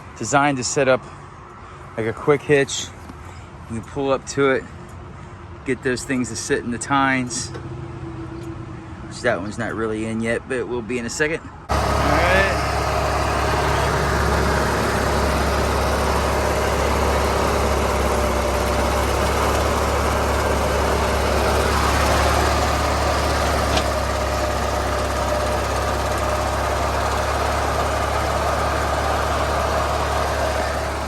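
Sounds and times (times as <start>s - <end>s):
tractor engine idling: 11.6s - 31.0s.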